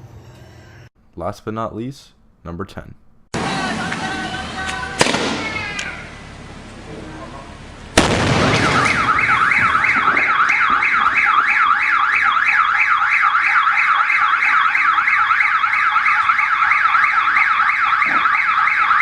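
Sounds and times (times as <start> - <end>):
firework blast: 4.9 - 5.8, 7.9 - 11.6
car alarm warbling: 8.4 - 19.0.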